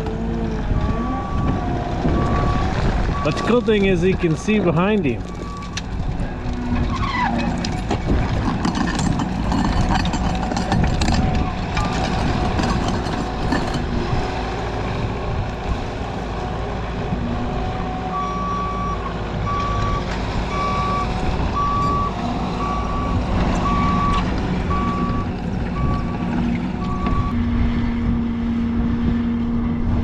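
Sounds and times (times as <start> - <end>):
diesel engine running: 0.0 - 30.0
reversing alarm beeping: 0.8 - 3.7, 5.2 - 5.8, 18.1 - 26.2, 26.8 - 27.4.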